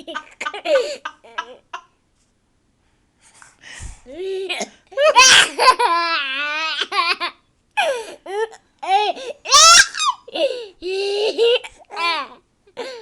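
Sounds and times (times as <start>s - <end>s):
child's shrill outbursts: 9.5s - 10.2s.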